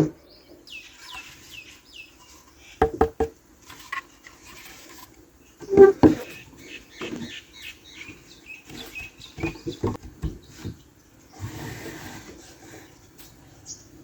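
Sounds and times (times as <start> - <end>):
plastic parts knocking: 2.8 - 3.4.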